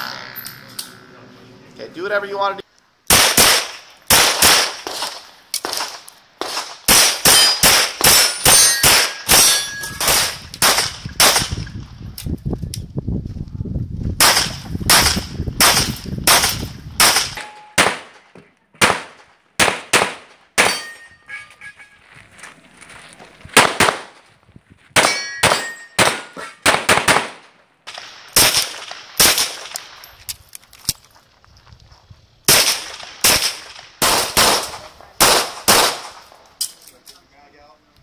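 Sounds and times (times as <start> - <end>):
pistol shots: 3.1 - 11.6, 14.2 - 18.2, 18.8 - 21.0, 23.6 - 24.2, 25.0 - 30.0, 32.5 - 36.3
steel targets clanging: 7.3 - 10.9, 17.4 - 17.8, 20.6 - 22.0, 25.0 - 26.7.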